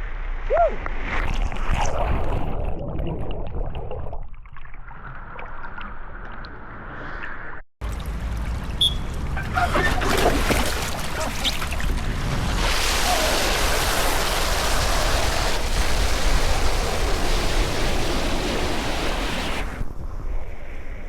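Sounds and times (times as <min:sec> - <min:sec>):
water rushing on waterslide: 0:07.8 - 0:19.9.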